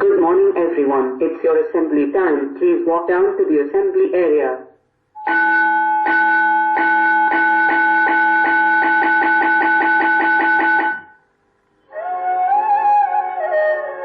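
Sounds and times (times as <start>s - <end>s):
flute music: 11.8s - 14.0s.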